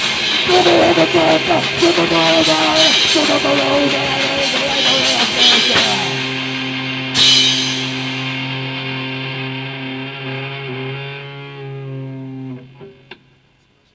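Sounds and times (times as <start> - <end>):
cymbal crash: 0.0 - 11.1
electric guitar chord ringing: 0.0 - 13.6.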